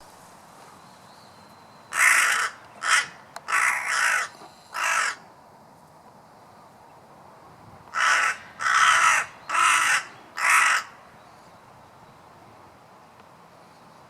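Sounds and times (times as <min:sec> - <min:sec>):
crow cawing: 0:01.9 - 0:05.3, 0:07.9 - 0:11.0.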